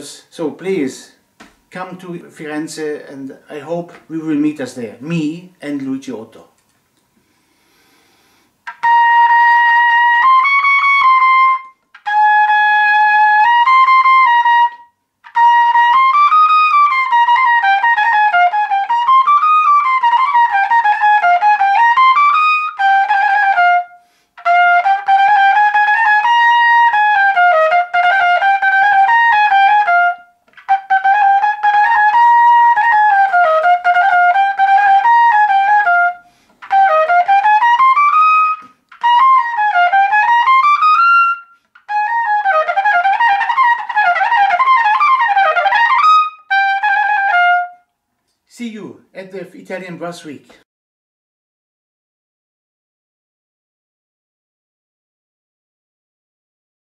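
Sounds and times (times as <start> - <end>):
solo trumpet melody: 8.6 - 47.9.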